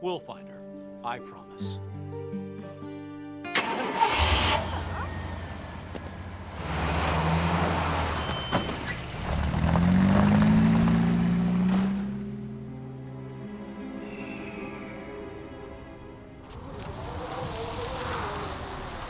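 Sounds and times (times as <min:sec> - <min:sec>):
vehicle engine starting and running: 0:03.5 - 0:13.1, 0:16.2 - 0:19.0.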